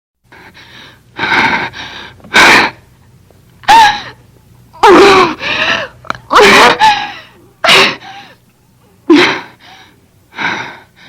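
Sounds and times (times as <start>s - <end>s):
high wailing sob: 3.6s - 4.2s, 4.8s - 8.1s
woman sobbing: 4.8s - 8.4s.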